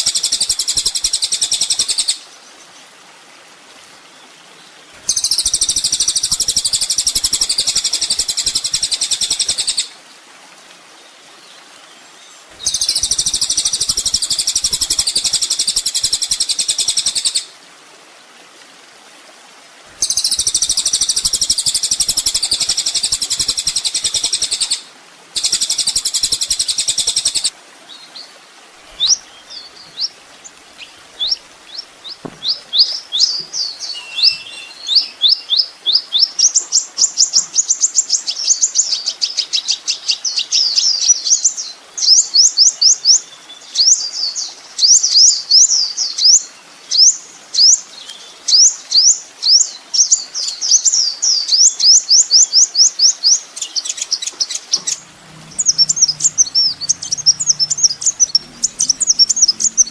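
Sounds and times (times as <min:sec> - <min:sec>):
sunbird singing high chirps: 0:30.8 - 0:36.2, 0:51.4 - 0:59.9.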